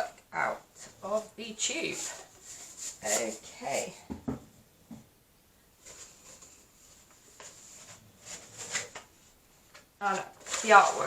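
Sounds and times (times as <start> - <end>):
paper rustling: 0.8 - 3.9, 5.8 - 11.0.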